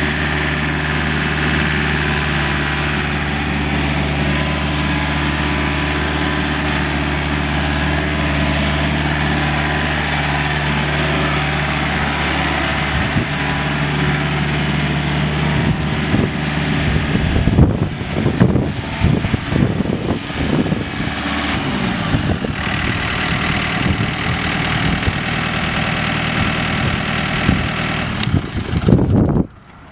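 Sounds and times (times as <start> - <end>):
diesel engine idling: 0.0 - 29.9
uneven engine noise with knocks: 15.5 - 29.9.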